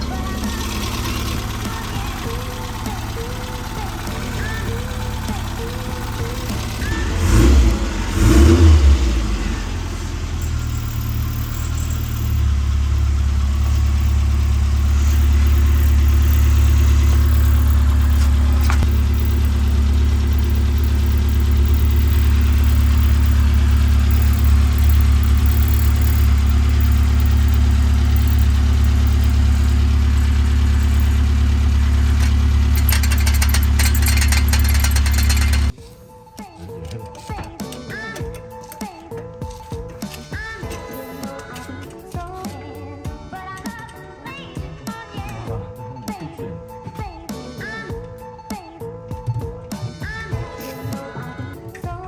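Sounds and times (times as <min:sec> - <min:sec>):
car engine droning: 0:00.0 - 0:35.8.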